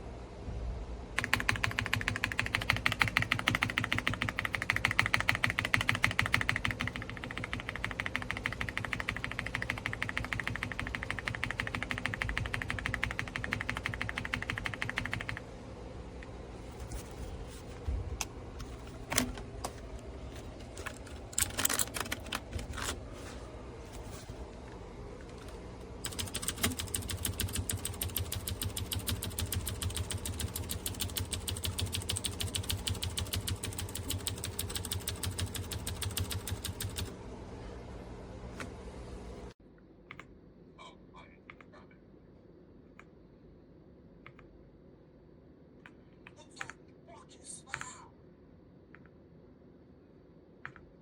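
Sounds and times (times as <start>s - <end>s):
mechanical keyboard typing: 1.2s - 15.5s, 20.4s - 23.0s, 25.4s - 37.1s.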